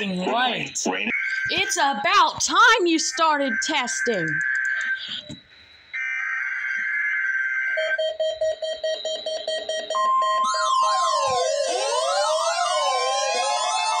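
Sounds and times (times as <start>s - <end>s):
rapid beeping: 0.0s - 6.0s, 7.8s - 14.0s
steady warning alarm tone: 0.0s - 14.0s
rising and falling siren: 6.0s - 8.6s, 9.2s - 14.0s.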